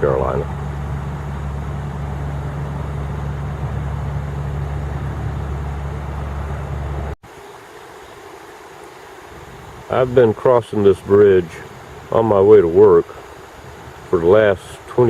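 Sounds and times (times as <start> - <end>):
car engine running: 0.0 - 7.2.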